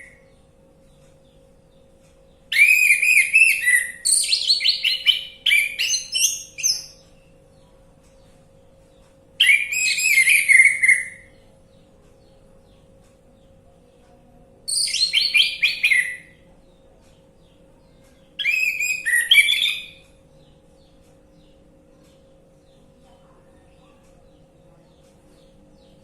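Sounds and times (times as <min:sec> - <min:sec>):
thrush singing whistled phrases: 0:18.4 - 0:20.0.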